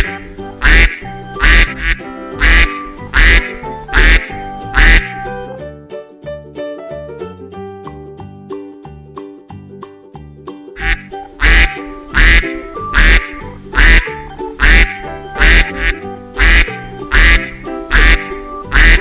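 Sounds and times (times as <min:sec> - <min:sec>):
duck quacking: 0:00.0 - 0:05.4, 0:10.8 - 0:19.0
light children's music: 0:00.0 - 0:19.0.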